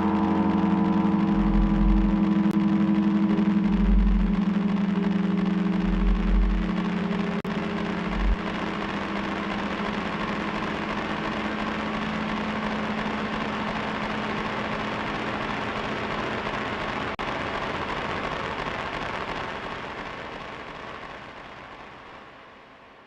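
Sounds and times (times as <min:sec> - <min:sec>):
synthesizer drone with deep pulse: 0:00.0 - 0:17.7
steady hiss-like noise: 0:00.0 - 0:23.0.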